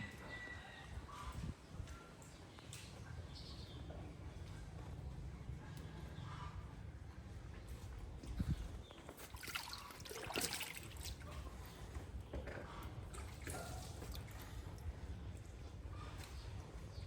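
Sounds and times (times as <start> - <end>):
water sloshing and trickling: 8.3 - 15.3
splashes: 9.2 - 11.6.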